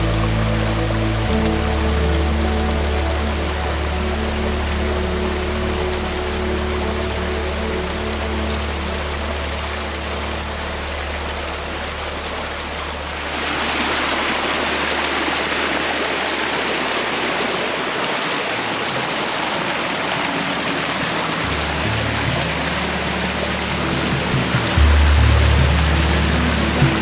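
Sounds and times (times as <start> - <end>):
low steady hum: 0.0 - 27.0
rushing mountain water: 0.0 - 27.0.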